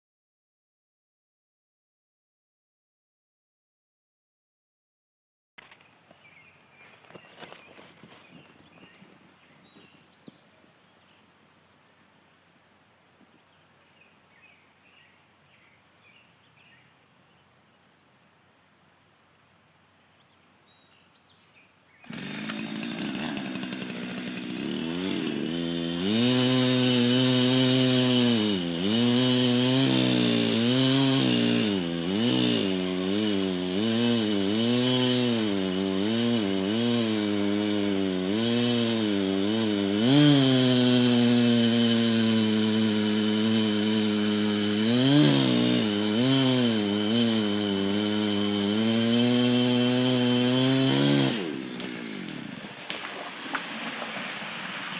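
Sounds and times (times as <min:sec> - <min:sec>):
chainsaw cutting wood: 0:07.0 - 0:10.4, 0:22.0 - 0:54.9.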